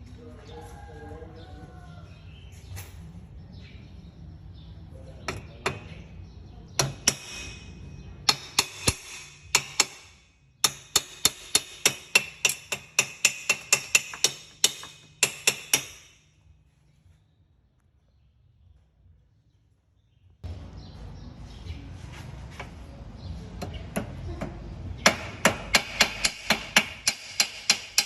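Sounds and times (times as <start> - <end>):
sharp ringing knocks: 6.8 - 16.2.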